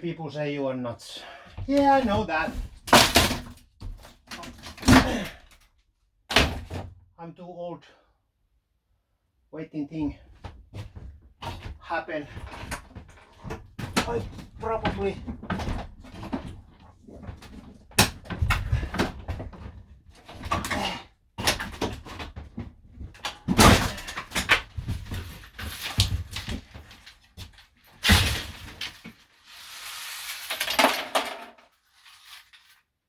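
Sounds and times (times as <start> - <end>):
long scrape: 29.4 - 30.5.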